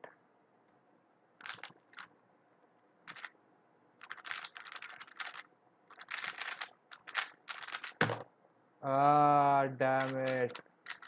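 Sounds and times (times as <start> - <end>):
puzzle cube clacking turns: 1.4 - 2.2, 3.1 - 3.4, 4.0 - 8.3, 10.0 - 11.0.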